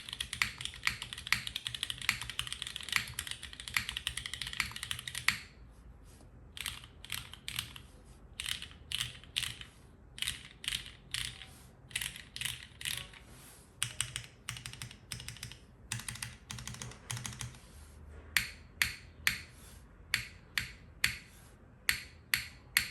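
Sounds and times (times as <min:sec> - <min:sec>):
mechanical keyboard typing: 0:00.0 - 0:05.5, 0:06.5 - 0:13.2, 0:13.8 - 0:17.6.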